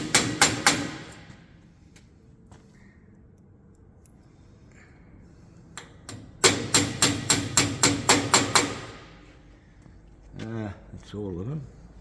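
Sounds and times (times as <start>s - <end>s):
hammer striking metal: 0.0s - 1.4s, 6.1s - 9.3s.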